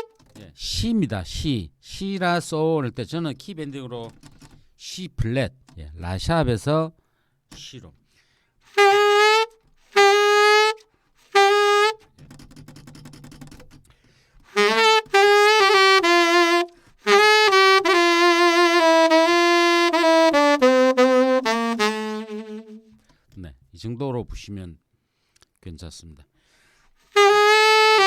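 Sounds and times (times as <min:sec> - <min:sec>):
saxophone playing slow melody: 0:00.0 - 0:00.2, 0:08.7 - 0:12.1, 0:14.5 - 0:23.0, 0:27.1 - 0:28.0.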